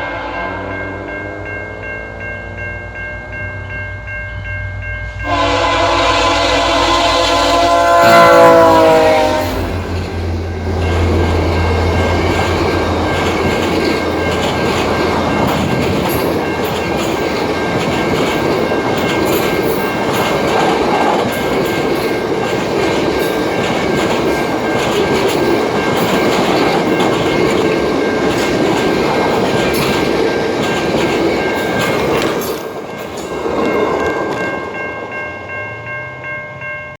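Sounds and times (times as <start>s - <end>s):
train horn: 0.0s - 1.2s, 5.1s - 10.8s
diesel locomotive drone: 0.0s - 37.0s
passenger cars rumbling by: 8.0s - 34.1s.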